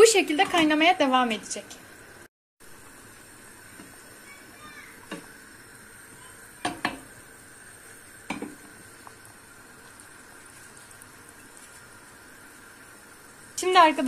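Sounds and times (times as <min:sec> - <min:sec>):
utensil knocking metal pot: 0:06.6 - 0:07.1.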